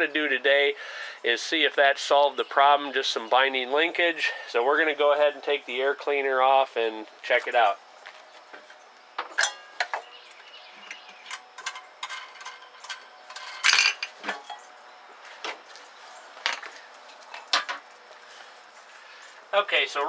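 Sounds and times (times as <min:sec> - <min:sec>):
metal parts clinking and knocking: 0:09.2 - 0:10.0, 0:10.9 - 0:14.6.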